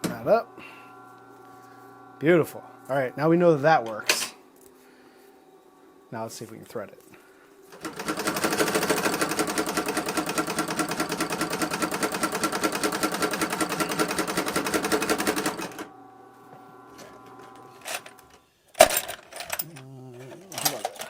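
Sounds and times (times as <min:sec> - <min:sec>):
faint motor hum: 0:00.0 - 0:21.0
sewing machine clattering: 0:07.8 - 0:15.9.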